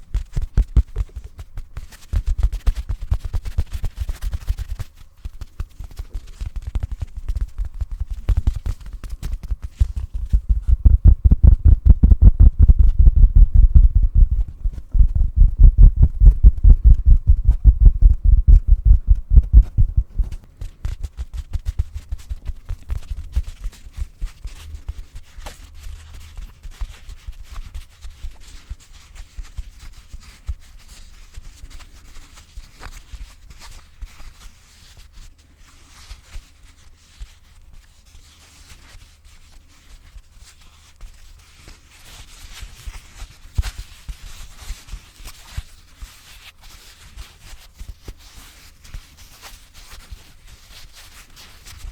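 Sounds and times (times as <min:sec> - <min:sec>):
muffled thumps on a pillow: 0:00.0 - 0:25.0
scratching on pillow fabric: 0:00.0 - 0:51.9.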